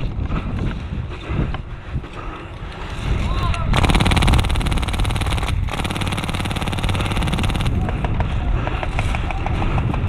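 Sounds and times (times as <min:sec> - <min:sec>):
airsoft gun automatic fire: 0:03.7 - 0:08.0
scattered clicks: 0:03.7 - 0:08.0.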